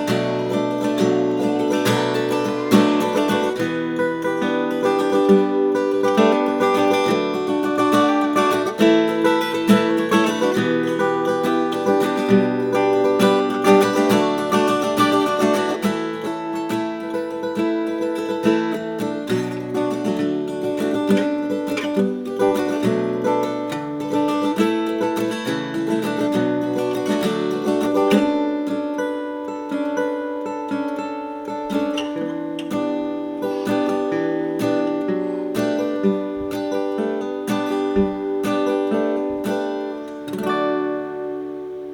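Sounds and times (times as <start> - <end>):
acoustic guitar strummed and picked: 0.0 - 41.9.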